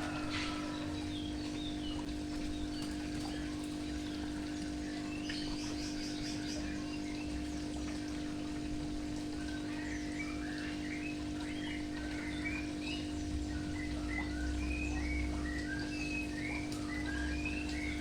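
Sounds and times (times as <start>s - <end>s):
birds chirping: 0.0s - 18.0s
low hum: 10.2s - 18.0s.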